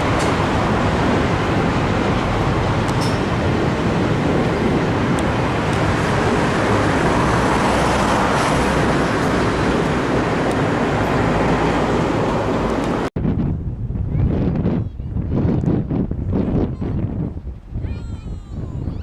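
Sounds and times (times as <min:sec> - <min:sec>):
train rumbling on rails: 0:00.0 - 0:13.1.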